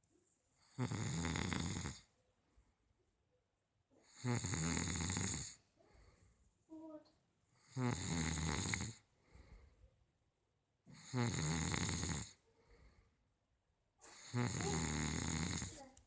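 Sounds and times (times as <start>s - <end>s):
person snoring loudly: 0.7s - 2.0s, 4.1s - 5.6s, 7.7s - 9.0s, 11.0s - 12.4s, 14.1s - 15.8s
quiet breathing: 5.4s - 7.9s, 8.7s - 10.1s, 12.0s - 13.4s, 14.0s - 16.0s.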